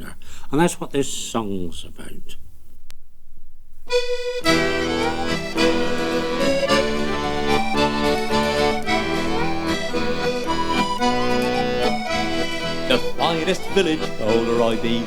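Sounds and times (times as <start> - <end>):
accordion folk tune: 3.9 - 15.0.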